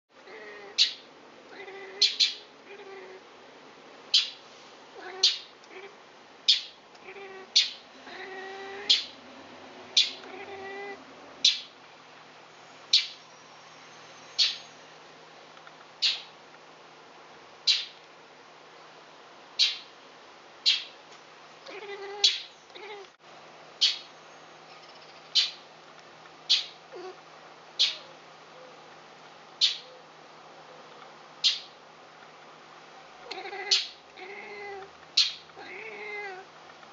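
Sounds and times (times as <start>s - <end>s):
cat meowing chirps: 0.3s - 3.2s, 5.0s - 5.9s, 6.5s - 9.2s, 10.0s - 11.6s, 21.7s - 23.1s, 33.2s - 36.5s.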